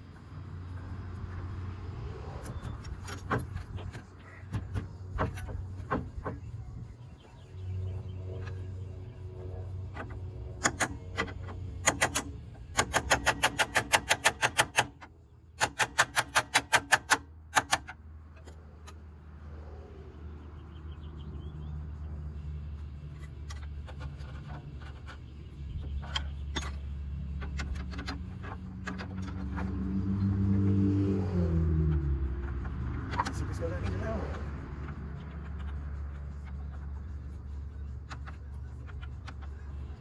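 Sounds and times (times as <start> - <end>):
steady low hum: 0.0 - 15.7, 31.9 - 40.0
sharp metallic clicks: 9.8 - 19.0, 23.1 - 30.3, 31.9 - 40.0.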